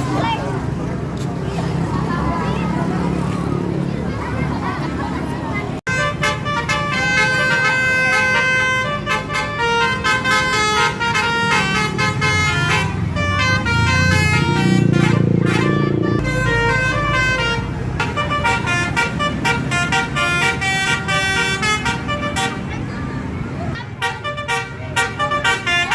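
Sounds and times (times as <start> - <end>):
multi-tone musical horn: 5.9 - 22.8, 23.9 - 25.9.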